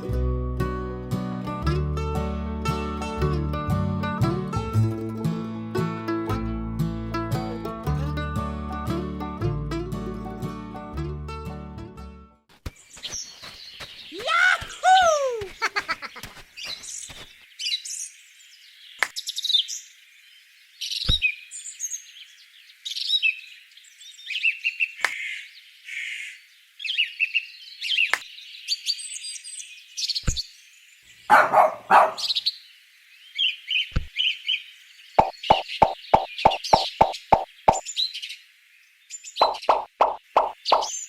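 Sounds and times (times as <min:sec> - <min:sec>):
small birds chirping: 0:12.6 - 0:41.0.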